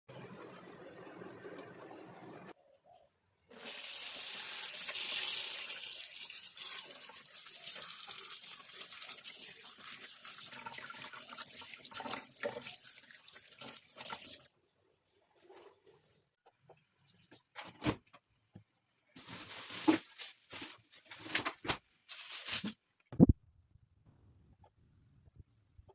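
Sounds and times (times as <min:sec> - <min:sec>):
water running from a tap: 0:03.5 - 0:14.5.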